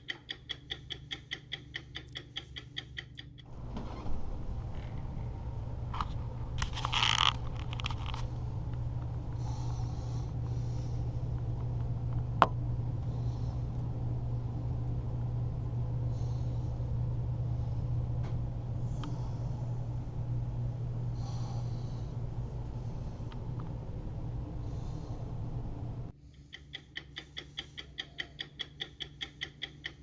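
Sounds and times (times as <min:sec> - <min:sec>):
sharp tick: 0:00.0 - 0:03.5, 0:26.5 - 0:30.0
clicks: 0:00.0 - 0:04.1, 0:26.3 - 0:30.0
wind rumbling: 0:03.5 - 0:26.1.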